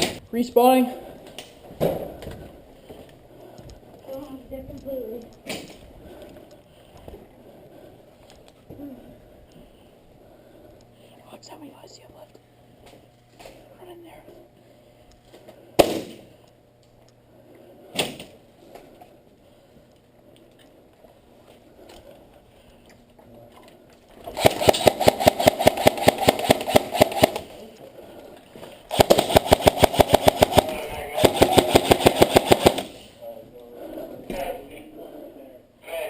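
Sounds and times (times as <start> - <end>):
rapid automatic airsoft fire: 24.3 - 27.6, 28.9 - 33.1.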